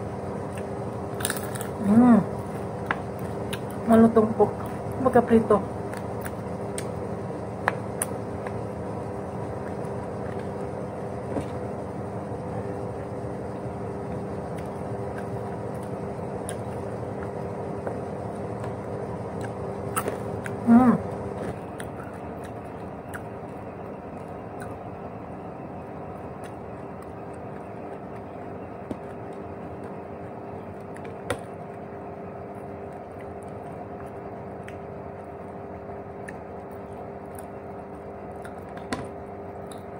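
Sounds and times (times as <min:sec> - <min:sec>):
electrical hum: 0:00.0 - 0:39.9
person humming: 0:20.6 - 0:21.1.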